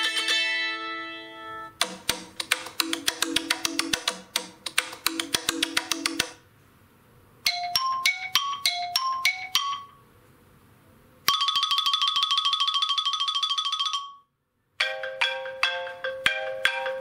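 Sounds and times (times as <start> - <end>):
phone ringtones: 11.3 - 14.3.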